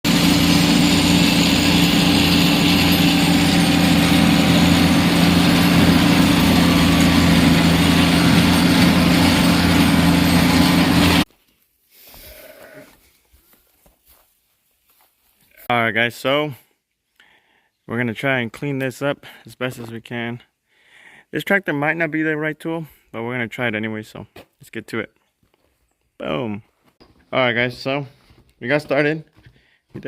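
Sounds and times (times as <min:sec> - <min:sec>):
tractor engine running: 0:00.0 - 0:11.3.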